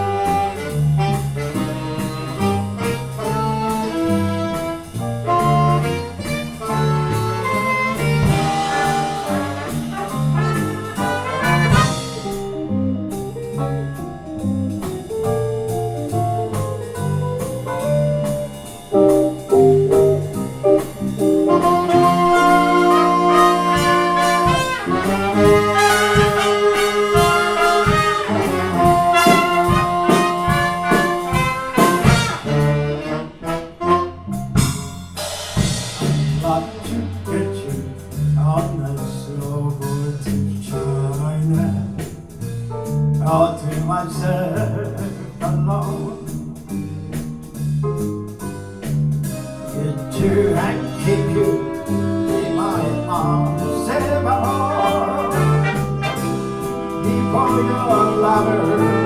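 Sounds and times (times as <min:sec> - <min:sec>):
brass horns playing chords: 0:00.0 - 0:13.1, 0:17.9 - 0:36.9, 0:49.7 - 0:59.0
bass: 0:00.0 - 0:59.0
drum kit: 0:00.0 - 0:59.0.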